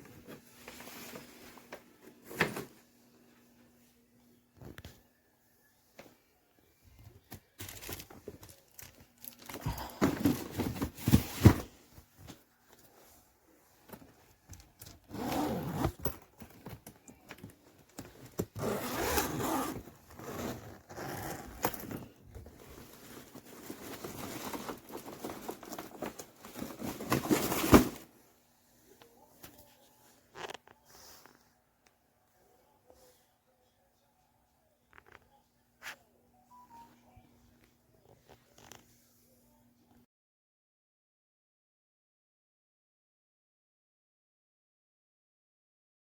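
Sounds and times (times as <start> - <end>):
suitcase rustling and scraping: 14.8 - 28.1.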